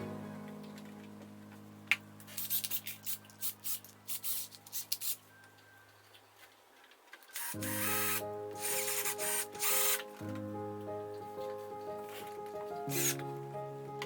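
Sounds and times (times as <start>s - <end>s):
held music chord: 0.0s - 2.3s, 7.6s - 14.0s.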